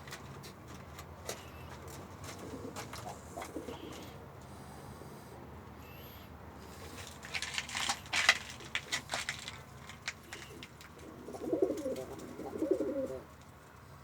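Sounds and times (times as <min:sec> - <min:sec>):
pigeon cooing: 0:01.3 - 0:04.2, 0:10.3 - 0:13.3
sharp clicks and rustling: 0:06.8 - 0:12.4.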